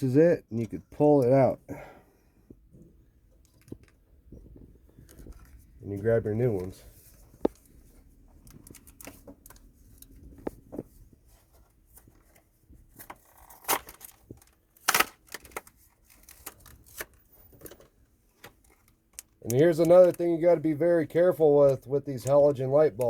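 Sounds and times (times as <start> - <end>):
packaging snaps: 13.2 - 17.1.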